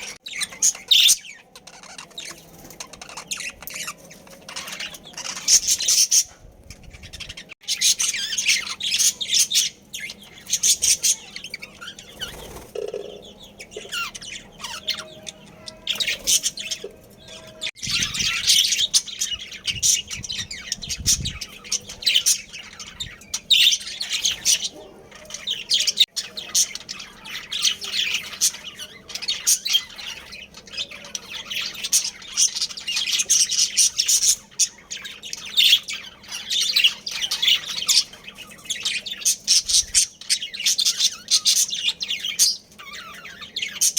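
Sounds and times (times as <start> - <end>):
budgerigars chirping: 0.0 - 43.9.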